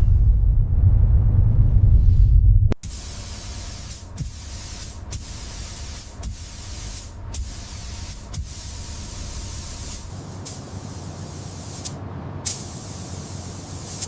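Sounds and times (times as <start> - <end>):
low hum: 0.0 - 3.4
high-pressure spray hissing: 2.8 - 14.0.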